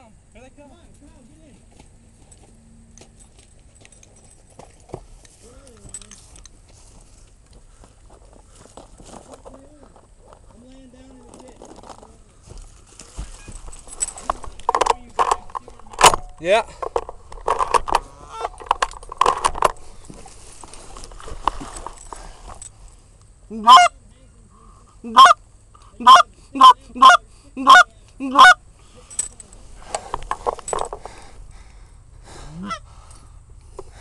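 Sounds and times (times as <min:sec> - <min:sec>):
rustling: 0:01.0 - 0:23.2, 0:28.8 - 0:32.0
goose honking: 0:18.1 - 0:18.6, 0:23.5 - 0:24.0, 0:25.0 - 0:25.4, 0:26.0 - 0:28.6, 0:32.6 - 0:32.9.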